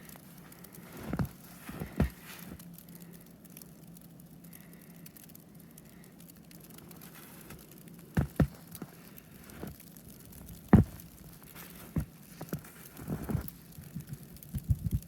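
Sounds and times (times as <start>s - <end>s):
faint low hum: 0.0s - 15.0s
footsteps crunching in snow: 0.8s - 2.6s, 6.9s - 14.0s.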